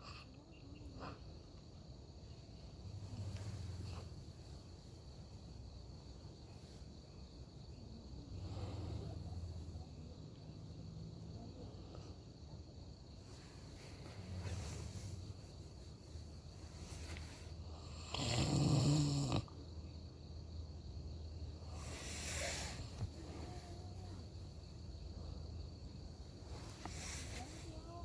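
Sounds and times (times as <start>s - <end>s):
quiet breaths: 0.0s - 28.0s
person snoring: 17.8s - 19.5s.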